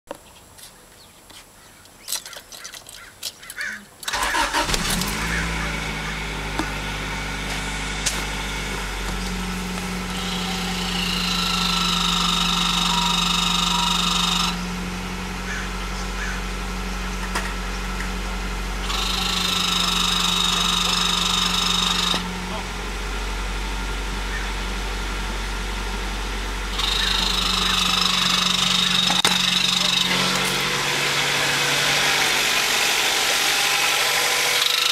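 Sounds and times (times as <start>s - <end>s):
car engine starting and idling: 4.0s - 34.9s
high whine: 4.6s - 19.6s.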